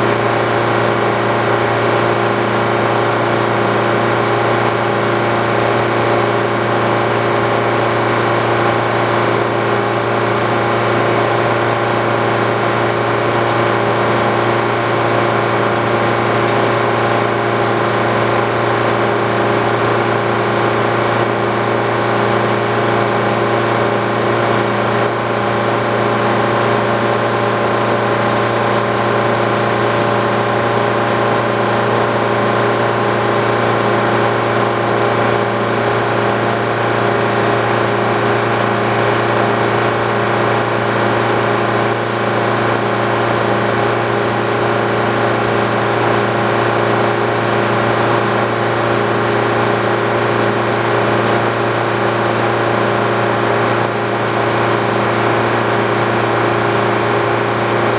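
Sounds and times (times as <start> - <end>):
sawmill mechanical hum: 0.0 - 57.9.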